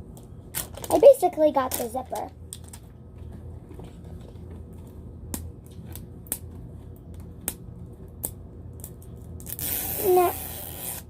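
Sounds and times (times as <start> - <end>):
plastic packaging clicks: 0.2 - 1.0, 1.7 - 2.9
packaging rustling: 0.5 - 2.9.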